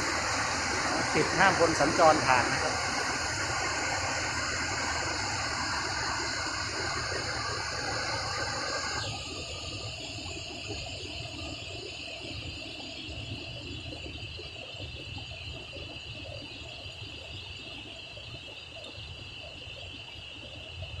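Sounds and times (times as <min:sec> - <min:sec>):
waterfall rushing: 0:00.7 - 0:03.2.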